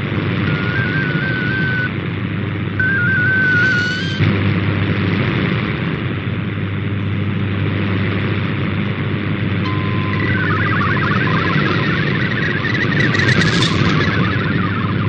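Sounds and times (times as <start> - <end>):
buzzing interference hum: 0.0 - 15.0
radio static: 0.0 - 15.0
digital data tones: 0.5 - 1.9, 2.8 - 4.2, 9.7 - 15.0
steady tone: 9.6 - 15.0.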